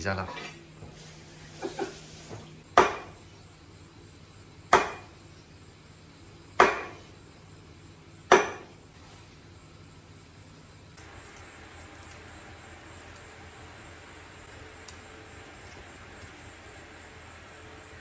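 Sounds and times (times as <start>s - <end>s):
cleaver chopping on wooden board: 2.8s - 3.2s, 4.7s - 5.1s, 6.6s - 7.0s, 8.3s - 8.7s.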